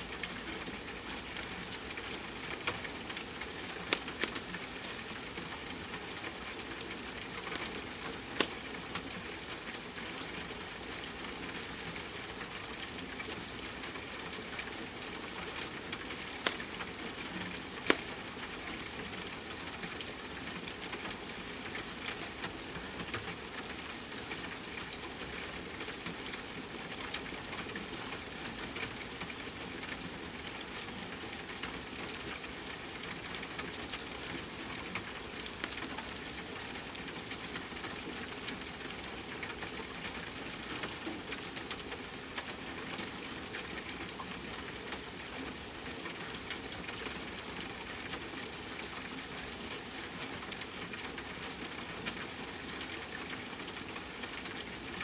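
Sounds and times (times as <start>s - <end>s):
wood fire crackling and popping: 2.6s - 4.5s, 8.4s - 8.7s, 15.9s - 18.3s.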